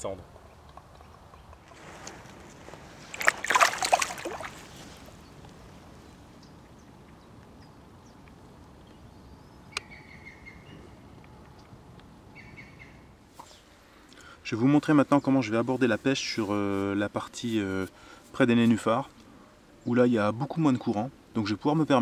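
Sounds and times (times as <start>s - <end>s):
faint riverside background: 0.0s - 22.0s
water splashing: 1.8s - 5.2s.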